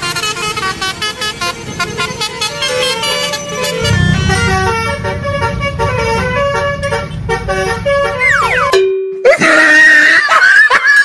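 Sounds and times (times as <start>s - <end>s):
multi-tone bus horn melody: 0.0s - 9.2s
low engine rumble: 0.2s - 8.7s
wavering high tone: 2.5s - 6.8s.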